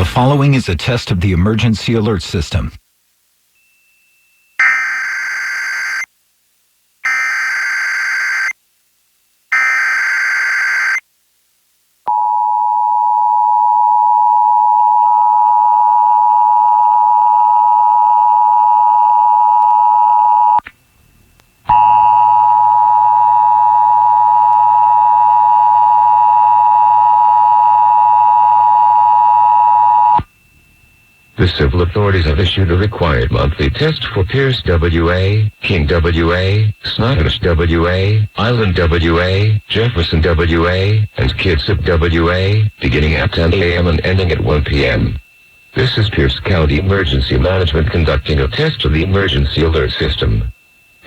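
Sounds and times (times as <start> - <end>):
digital data screech: 4.6 - 6.1, 7.1 - 8.5, 9.6 - 11.0.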